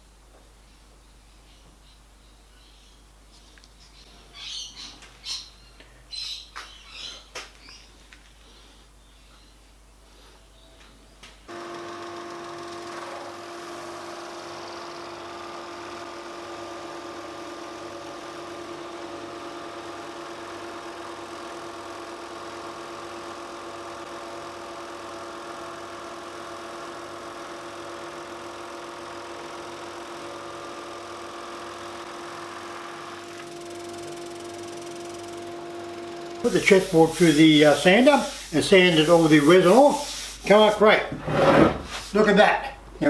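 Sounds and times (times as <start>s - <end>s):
sander motor humming: 11.5s - 40.5s.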